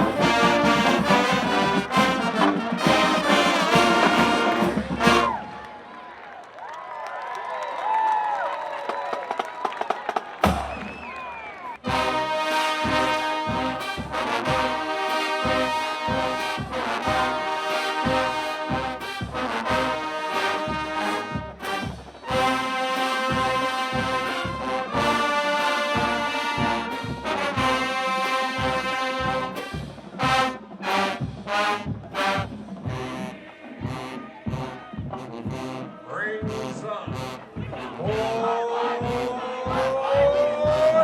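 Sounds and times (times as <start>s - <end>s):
brass section holding chords: 0.0s - 5.4s, 11.8s - 41.0s
bass drum beat: 11.9s - 28.0s, 31.1s - 35.8s, 36.4s - 41.0s.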